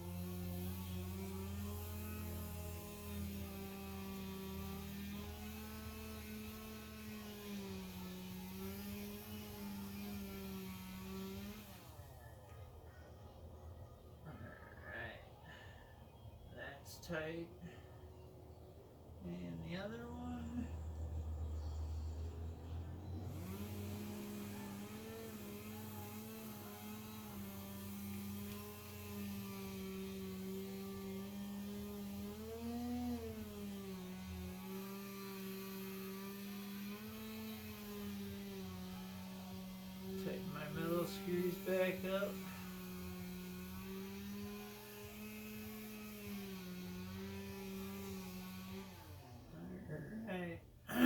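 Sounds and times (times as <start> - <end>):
electric screwdriver running: 0.0 - 12.1, 23.0 - 49.5
small electric motor whirring: 0.0 - 13.0, 18.6 - 49.9.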